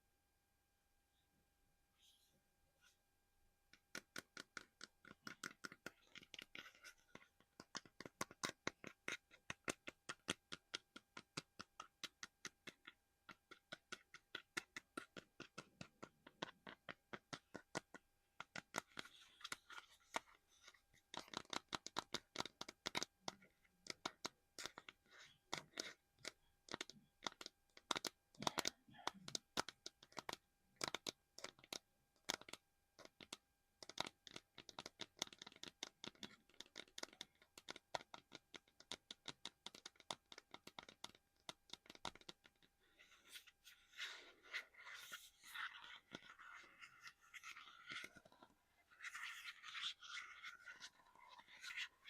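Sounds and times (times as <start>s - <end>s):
scratching or rubbing: 41.8s - 52.0s.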